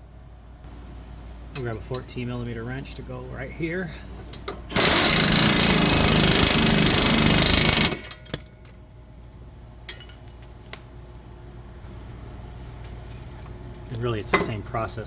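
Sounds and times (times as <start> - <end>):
impact wrench hammering: 4.4 - 8.5.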